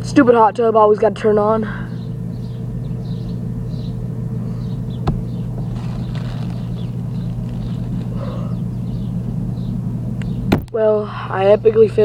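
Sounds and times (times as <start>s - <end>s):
hot tub pump humming: 0.0s - 12.0s.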